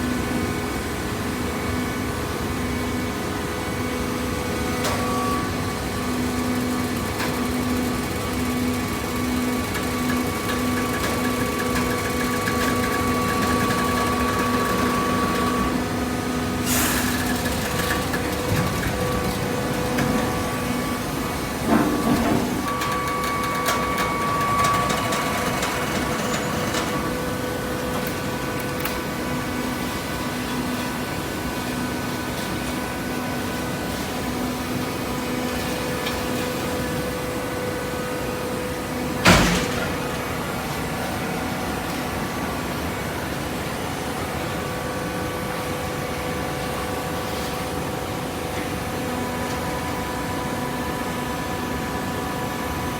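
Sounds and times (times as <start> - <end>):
baler machine hum: 4.4 - 30.4.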